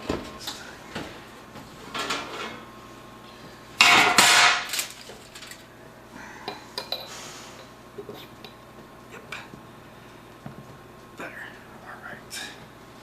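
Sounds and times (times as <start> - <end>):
metal parts clattering rattle: 4.1 - 5.6.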